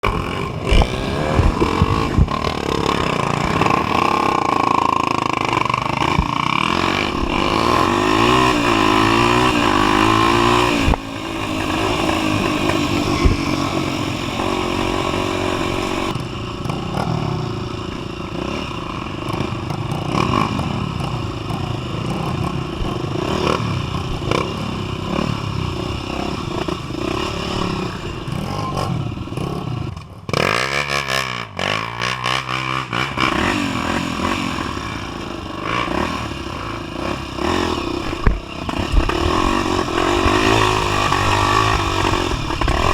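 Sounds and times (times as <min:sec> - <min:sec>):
knocks and clatter over rough ground: 0:00.0 - 0:25.4, 0:32.9 - 0:42.9
motorcycle engine revving: 0:00.0 - 0:42.9.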